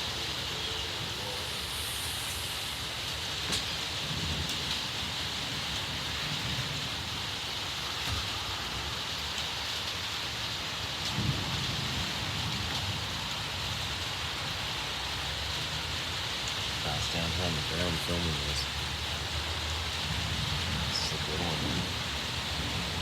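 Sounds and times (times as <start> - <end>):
thunder rumble: 0.0 - 9.6, 10.6 - 14.6, 19.8 - 23.0
steady rain: 0.0 - 23.0.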